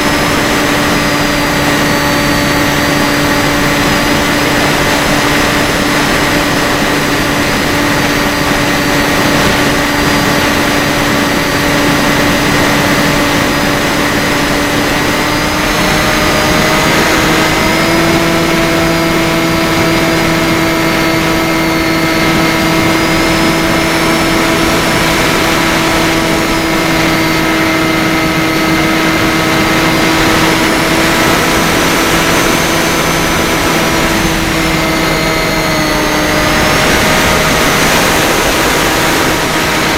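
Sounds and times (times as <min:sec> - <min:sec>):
air rushing: 0:00.0 - 0:39.9
model plane motor humming: 0:00.0 - 0:39.9.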